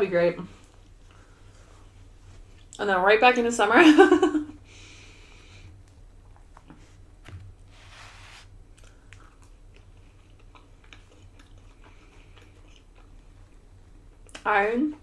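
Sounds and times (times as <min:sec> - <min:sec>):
person chewing: 0:08.3 - 0:14.4.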